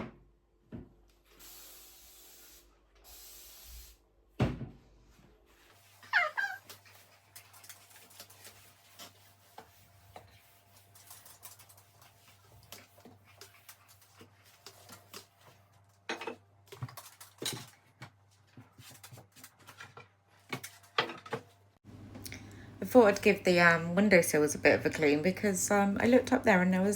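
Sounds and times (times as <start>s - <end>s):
kitchen items clicking and knocking: 16.0s - 18.2s
low steady hum: 21.9s - 26.9s.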